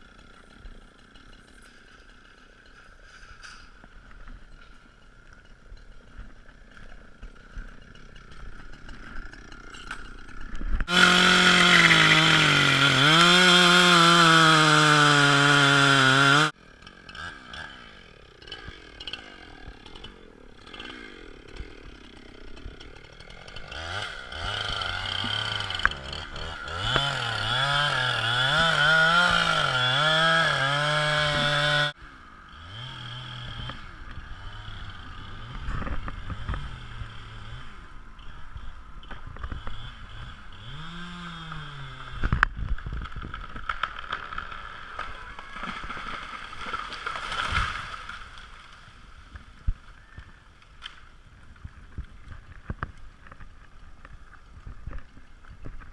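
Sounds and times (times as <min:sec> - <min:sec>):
chainsaw engine revving: 0:06.5 - 0:48.8.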